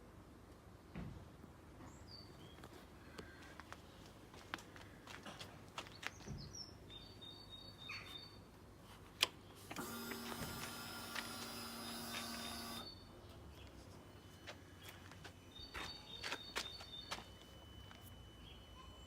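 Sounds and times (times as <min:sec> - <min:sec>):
mechanical whir: 0:09.7 - 0:13.0.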